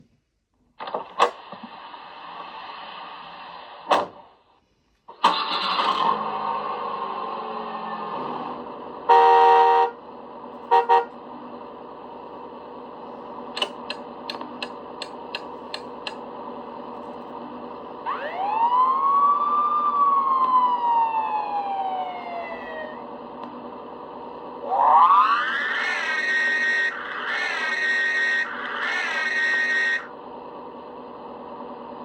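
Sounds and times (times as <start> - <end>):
short horn blast: 9.1 - 10.0, 10.7 - 11.1
clicks: 13.5 - 16.2
siren wail: 18.0 - 23.2, 24.6 - 30.1.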